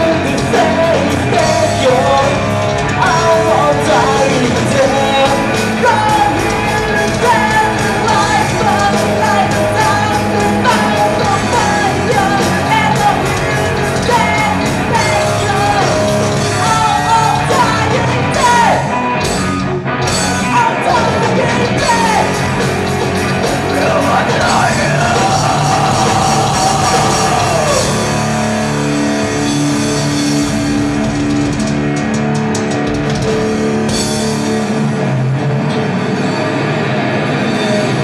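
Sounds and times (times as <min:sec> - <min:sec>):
person singing: 0:00.0 - 0:18.9, 0:20.2 - 0:22.4, 0:23.5 - 0:28.6
live rock band playing: 0:00.0 - 0:38.0.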